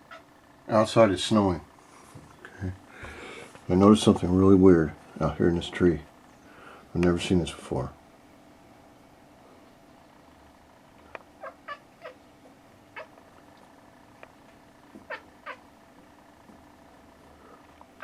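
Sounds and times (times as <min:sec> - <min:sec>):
cat chirping: 0:00.0 - 0:00.3, 0:11.4 - 0:13.2, 0:15.0 - 0:15.7.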